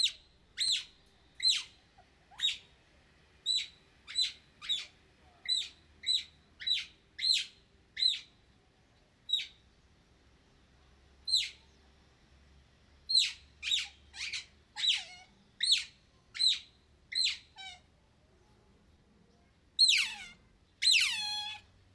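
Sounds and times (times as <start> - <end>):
otter chirping: 0.0 - 1.7, 19.8 - 21.6.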